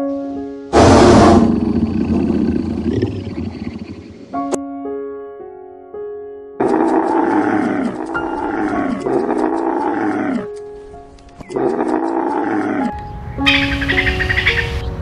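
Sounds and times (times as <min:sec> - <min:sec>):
soft piano music: 0:00.0 - 0:00.8, 0:04.0 - 0:11.6, 0:12.7 - 0:15.0
large animal roaring: 0:00.8 - 0:04.4, 0:06.6 - 0:10.5, 0:11.5 - 0:13.0.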